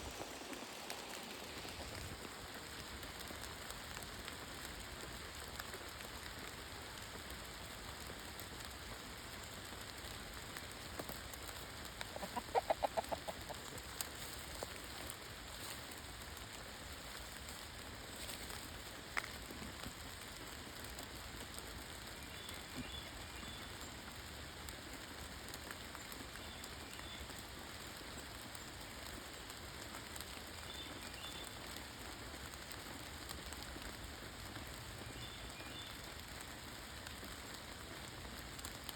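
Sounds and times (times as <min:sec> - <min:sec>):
chicken clucking: 0:12.0 - 0:13.8.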